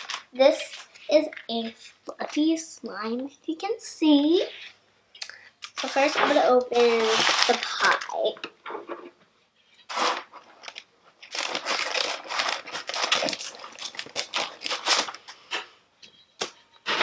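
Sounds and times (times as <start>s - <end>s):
packaging crinkling and tearing: 0.0s - 1.4s, 5.6s - 8.4s, 9.9s - 15.4s.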